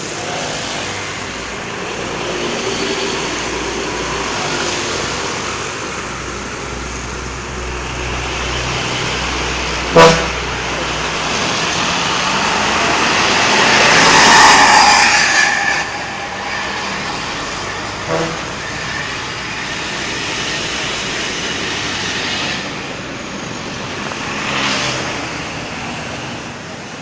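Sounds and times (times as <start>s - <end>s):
traffic noise: 0.0s - 27.0s
heavy vehicle passing: 0.5s - 22.0s
pitched horn toot: 9.8s - 10.8s, 17.9s - 19.0s.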